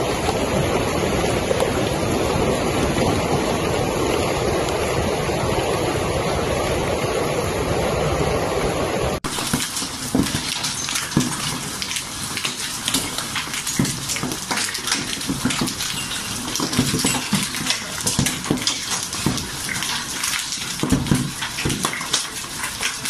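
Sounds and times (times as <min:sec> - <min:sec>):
heavy rain hissing: 0:00.0 - 0:23.0
hailstone impacts: 0:09.3 - 0:23.0.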